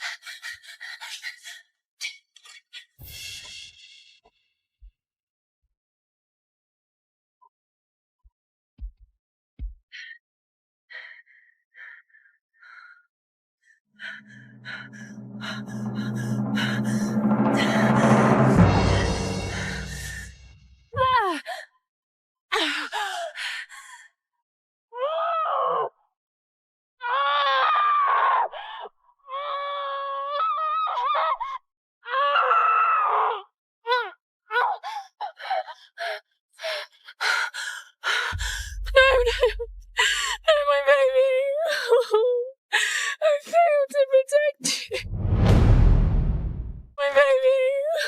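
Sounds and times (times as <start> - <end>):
dark dramatic music with drone: 14.0 - 20.6.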